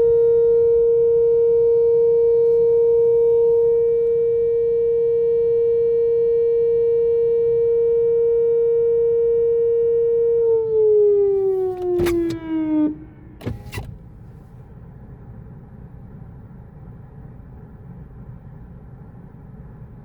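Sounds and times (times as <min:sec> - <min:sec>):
warning siren winding down: 0:00.0 - 0:13.8.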